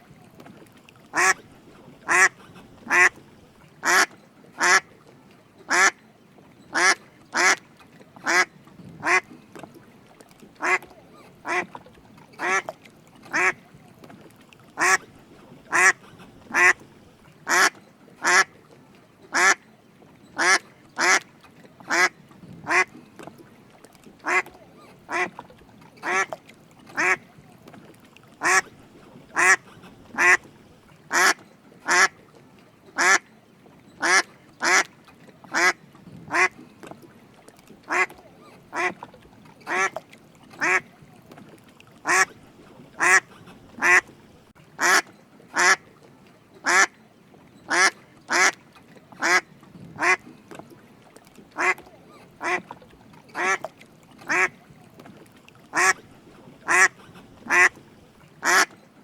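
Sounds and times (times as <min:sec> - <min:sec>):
duck quacking: 0:01.1 - 0:01.4, 0:02.0 - 0:03.2, 0:03.8 - 0:04.8, 0:05.7 - 0:05.9, 0:06.8 - 0:07.6, 0:08.2 - 0:09.3, 0:10.6 - 0:11.7, 0:12.4 - 0:12.7, 0:13.3 - 0:13.6, 0:14.8 - 0:15.0, 0:15.7 - 0:16.8, 0:17.5 - 0:18.5, 0:22.7 - 0:22.9, 0:24.2 - 0:24.5, 0:25.1 - 0:25.4, 0:26.0 - 0:26.3, 0:27.0 - 0:27.2, 0:28.4 - 0:28.7, 0:29.3 - 0:30.5, 0:31.1 - 0:32.1, 0:34.0 - 0:34.9, 0:35.5 - 0:36.6, 0:37.9 - 0:39.0, 0:39.7 - 0:40.0, 0:40.6 - 0:40.8, 0:42.0 - 0:42.4, 0:43.0 - 0:44.1, 0:44.8 - 0:45.0, 0:46.6 - 0:46.9, 0:47.7 - 0:48.6, 0:49.2 - 0:49.4, 0:50.0 - 0:50.2, 0:51.6 - 0:51.8, 0:52.4 - 0:52.7, 0:53.4 - 0:53.7, 0:54.3 - 0:54.5, 0:55.7 - 0:56.0, 0:56.6 - 0:57.8, 0:58.4 - 0:58.7.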